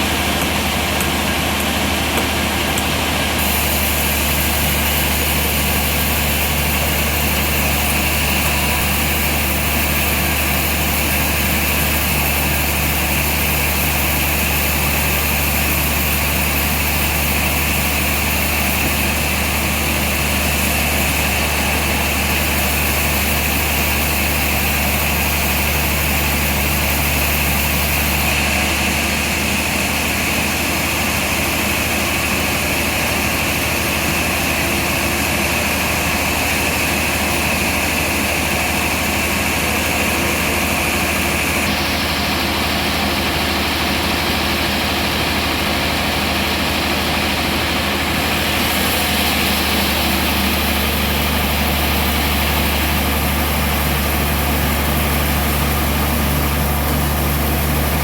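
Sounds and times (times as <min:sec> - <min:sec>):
band sawmill running: 0:00.0 - 0:58.0.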